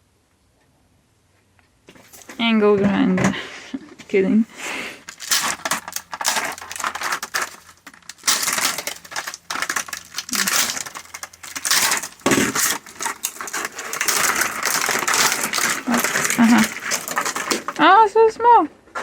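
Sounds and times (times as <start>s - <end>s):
metal hand tools clinking: 5.1s - 17.9s.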